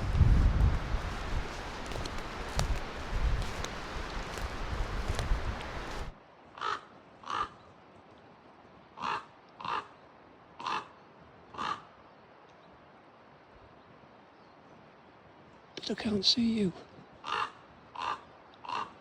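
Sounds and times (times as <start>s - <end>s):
wind buffeting microphone: 0.0s - 6.2s
crow cawing: 6.6s - 7.6s, 9.0s - 10.0s, 10.6s - 12.0s, 17.2s - 19.0s.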